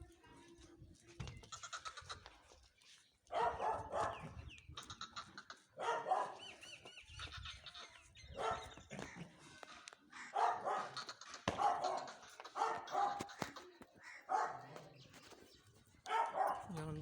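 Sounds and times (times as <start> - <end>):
drawn-out animal calls: 1.4 - 3.0, 4.0 - 15.3.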